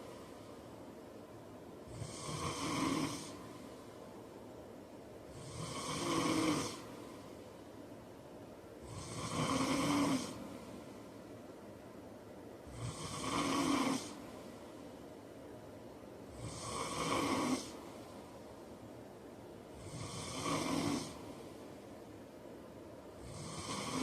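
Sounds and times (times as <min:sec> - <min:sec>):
quiet breathing: 0:00.0 - 0:24.0
man snoring: 0:01.9 - 0:03.4, 0:05.3 - 0:06.8, 0:08.8 - 0:10.4, 0:12.7 - 0:14.2, 0:16.3 - 0:17.8, 0:19.8 - 0:21.3, 0:23.2 - 0:24.0.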